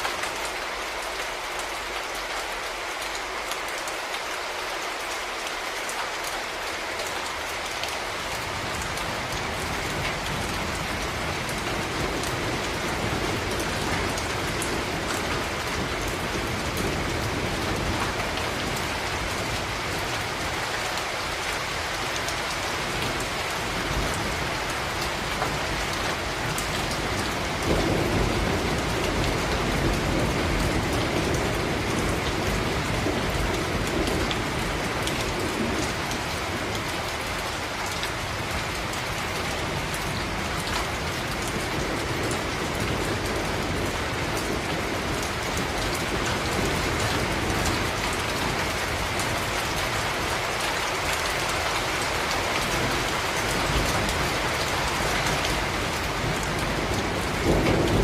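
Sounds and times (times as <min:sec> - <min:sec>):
rain on hard surfaces: 0:00.0 - 0:58.0
thunder rumbling: 0:22.9 - 0:37.2, 0:52.7 - 0:58.0.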